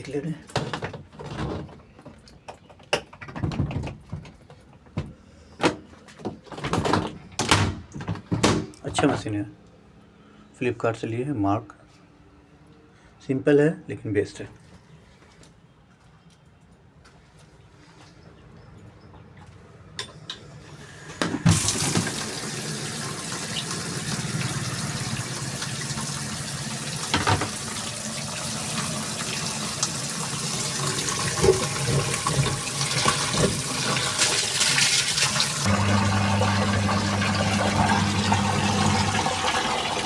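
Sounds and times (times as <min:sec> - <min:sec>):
washing machine motor hum: 0:21.4 - 0:40.0
water sloshing in washing machine: 0:21.4 - 0:40.0.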